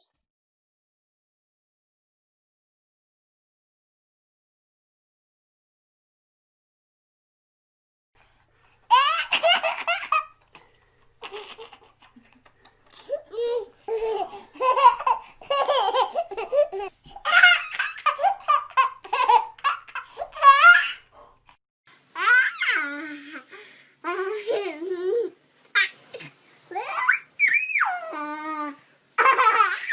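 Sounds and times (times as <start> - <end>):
young children laughing: 29.2 - 29.9.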